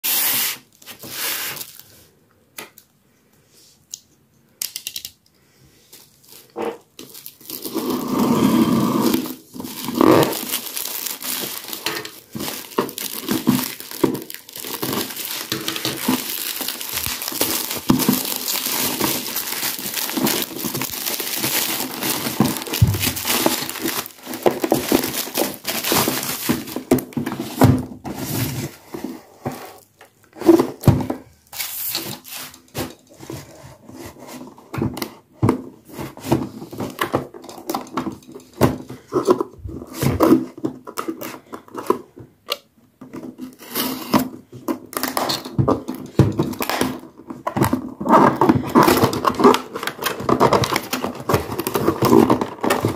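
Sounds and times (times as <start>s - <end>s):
packaging crinkling and tearing: 6.0s - 28.8s, 43.4s - 52.9s.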